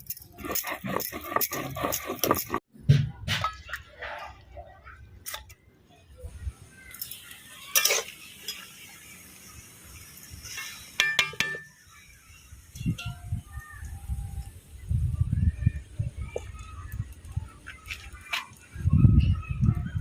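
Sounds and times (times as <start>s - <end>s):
metal dishes clinking and scraping: 7.0s - 8.7s.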